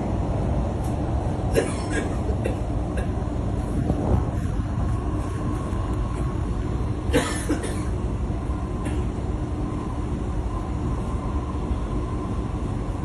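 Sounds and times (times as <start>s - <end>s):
train carriage rumble: 0.0s - 13.0s
man coughing: 1.5s - 3.2s, 7.1s - 8.0s.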